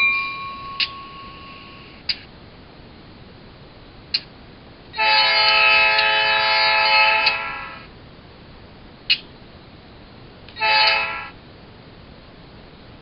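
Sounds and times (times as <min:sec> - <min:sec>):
diesel air horn blasts: 0:05.0 - 0:07.8, 0:10.6 - 0:11.3.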